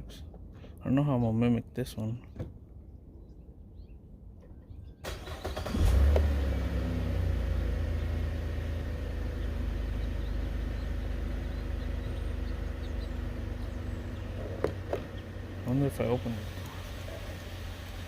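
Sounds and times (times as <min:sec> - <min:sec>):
car engine starting and idling: 0:05.0 - 0:18.0.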